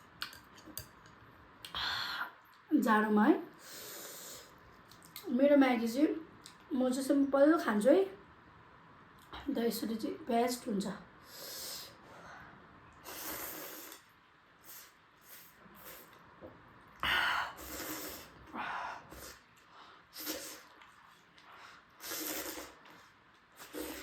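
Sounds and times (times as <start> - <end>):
slurps and sniffs while eating: 3.6 - 5.0, 13.0 - 16.3, 17.5 - 24.0.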